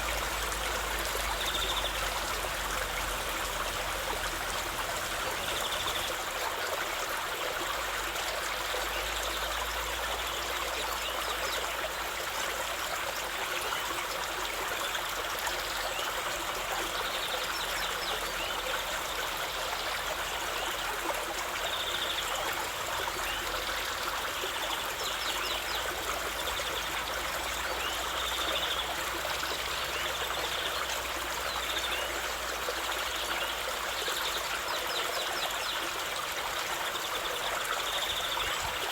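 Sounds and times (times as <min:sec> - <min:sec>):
waterfall splashing over rocks: 0:00.0 - 0:10.8.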